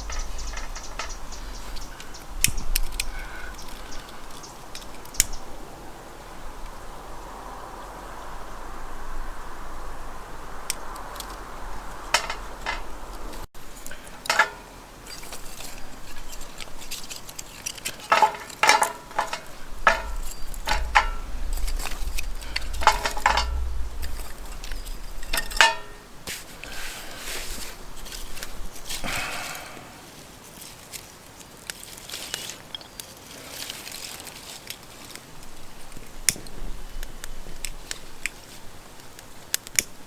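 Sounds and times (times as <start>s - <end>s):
metal cookware clinking: 12.1s - 12.9s, 13.9s - 14.7s, 17.7s - 23.7s, 24.6s - 26.1s.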